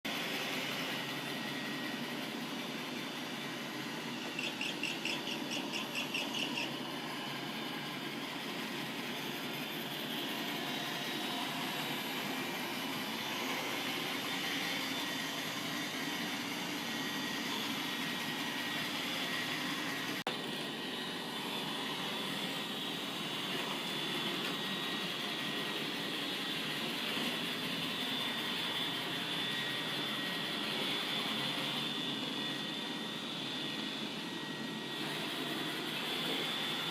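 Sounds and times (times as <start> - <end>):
robot vacuum whirring: 0.1 - 36.9
rapid high-pitched pulsing: 4.4 - 6.8.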